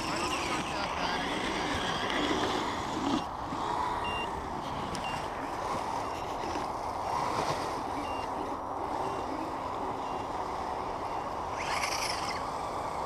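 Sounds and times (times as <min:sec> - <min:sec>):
faint high beeps: 0:04.0 - 0:04.3, 0:05.0 - 0:06.4, 0:08.0 - 0:11.4
small electric motor whirring: 0:10.9 - 0:13.0.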